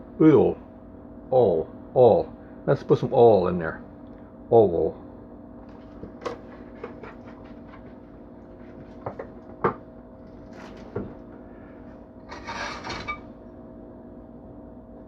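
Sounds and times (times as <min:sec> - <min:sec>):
steady hum: 0:00.0 - 0:15.0
rustling scrape: 0:12.3 - 0:13.3.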